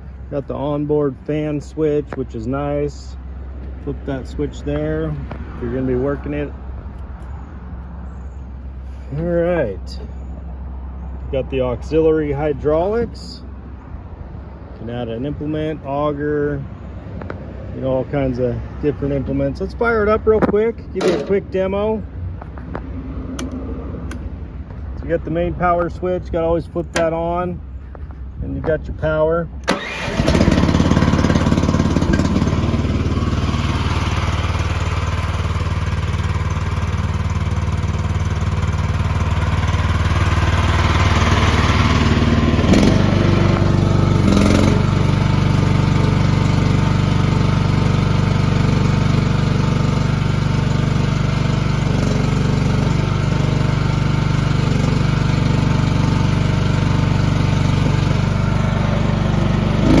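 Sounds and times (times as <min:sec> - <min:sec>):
short engine knocks: 0:20.4 - 0:21.4
engine starting and running: 0:20.9 - 0:21.6, 0:29.6 - 1:00.0.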